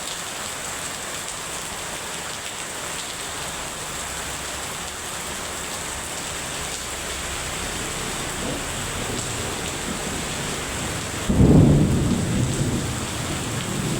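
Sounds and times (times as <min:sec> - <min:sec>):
heavy rain falling: 0:00.0 - 0:13.9
thunder clap rumbling: 0:07.6 - 0:13.9.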